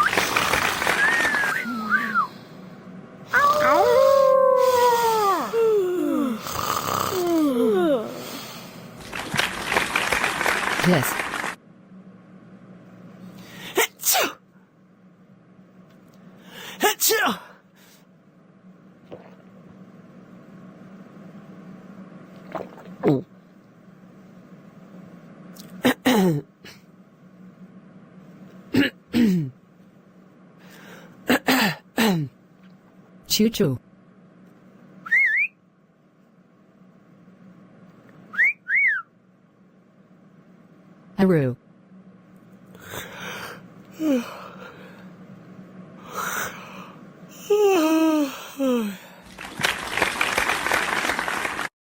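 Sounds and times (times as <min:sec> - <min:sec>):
clapping applause: 0:00.0 - 0:01.8, 0:09.0 - 0:11.6, 0:49.2 - 0:51.7
faint steady hum: 0:00.0 - 0:51.7
person clearing throat: 0:28.7 - 0:29.6.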